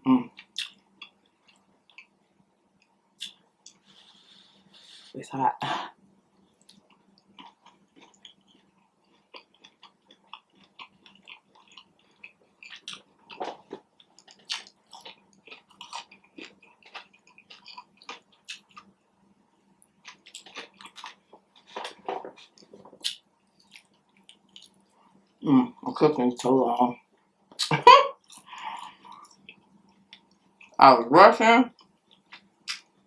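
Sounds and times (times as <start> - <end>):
chewing food mouth smacks: 0.4 - 2.1, 6.6 - 18.9, 31.8 - 32.9.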